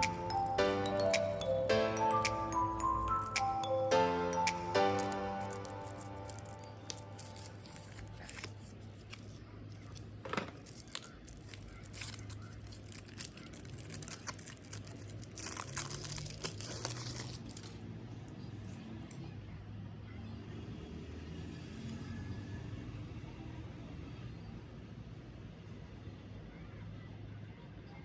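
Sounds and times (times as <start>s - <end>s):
packaging tearing and crinkling: 5.4s - 17.9s.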